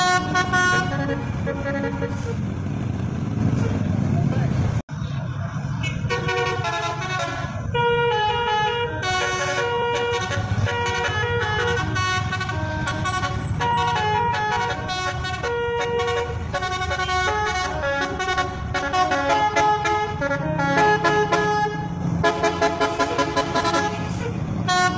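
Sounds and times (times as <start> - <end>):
bus horn playing rapid melody: 0.0 - 2.4, 6.0 - 24.9
bus engine rumble: 0.0 - 24.9.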